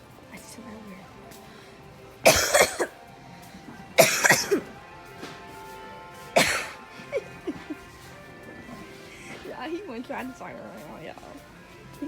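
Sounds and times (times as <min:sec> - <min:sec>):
background music: 0:00.0 - 0:12.0
person fake coughing: 0:02.2 - 0:02.9, 0:04.0 - 0:04.7, 0:06.4 - 0:07.8.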